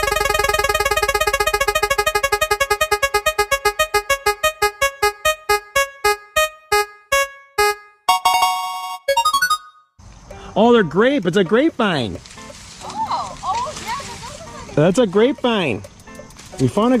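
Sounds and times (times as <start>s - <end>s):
bright electronic note repeating: 0.0s - 9.8s.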